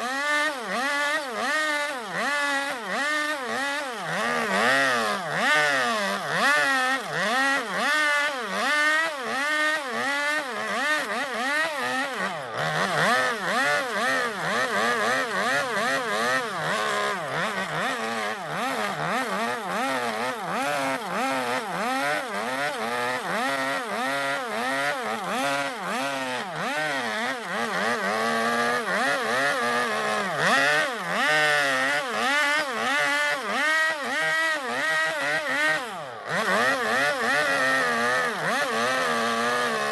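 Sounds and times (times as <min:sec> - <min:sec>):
chainsaw carving wood: 0:00.0 - 0:39.9.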